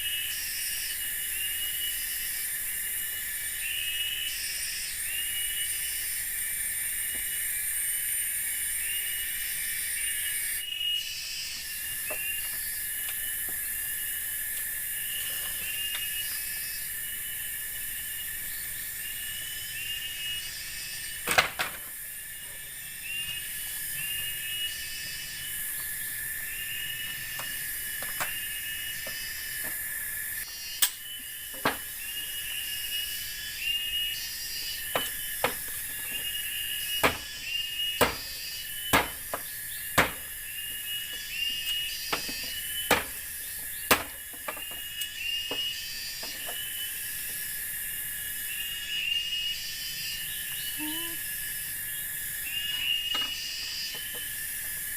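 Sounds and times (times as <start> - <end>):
insect chorus: 0.0 - 54.9
sharp knocks: 37.0 - 37.3, 38.0 - 38.3, 38.9 - 40.3, 42.1 - 43.2, 43.9 - 44.8.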